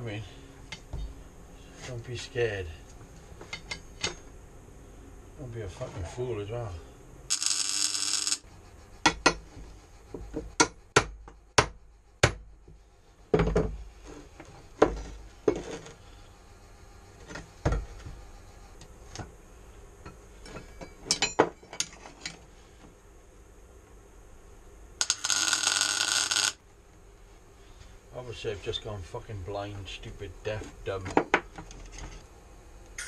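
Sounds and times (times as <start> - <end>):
welding arc crackling hiss: 7.3 - 9.2, 25.0 - 26.6
metallic knocks and clinks of steel: 20.4 - 22.4.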